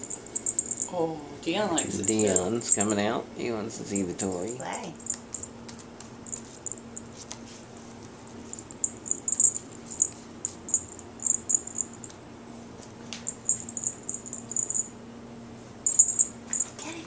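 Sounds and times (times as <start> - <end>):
cat toy bell jingling: 0.0 - 0.9, 1.7 - 3.0, 8.5 - 12.1, 13.3 - 14.9, 15.8 - 16.7
faint steady hum: 0.0 - 17.0.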